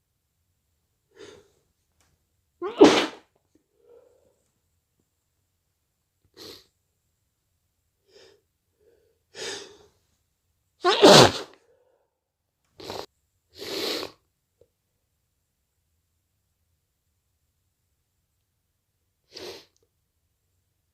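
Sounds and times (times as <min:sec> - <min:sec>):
person sneezing: 0:02.6 - 0:03.2, 0:10.8 - 0:11.6.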